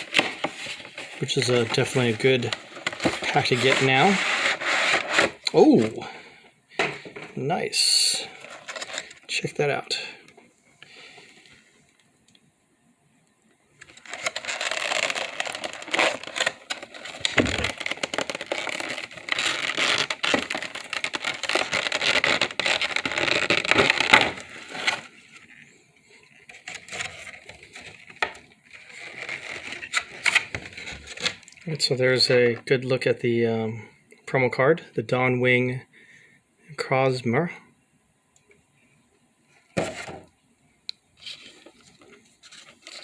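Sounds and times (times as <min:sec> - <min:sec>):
plastic and cardboard packaging rustling: 0:00.0 - 0:10.0, 0:13.8 - 0:31.9, 0:39.6 - 0:40.3, 0:41.2 - 0:43.0.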